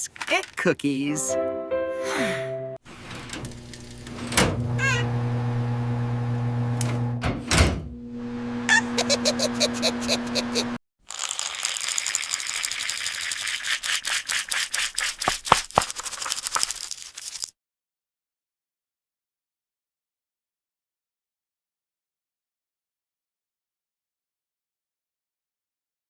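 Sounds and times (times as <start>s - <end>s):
electric hum: 3.0s - 10.8s.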